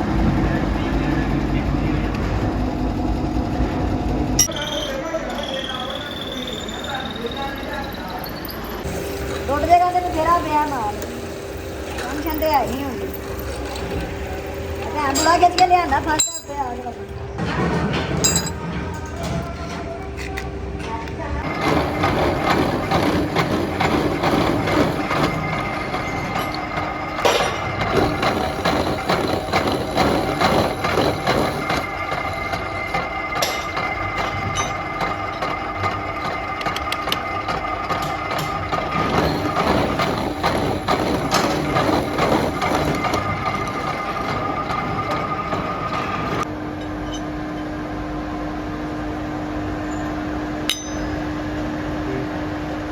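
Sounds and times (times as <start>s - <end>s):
machinery humming: 0.0s - 52.9s
metal clanking on metal: 14.8s - 20.0s, 21.6s - 47.3s.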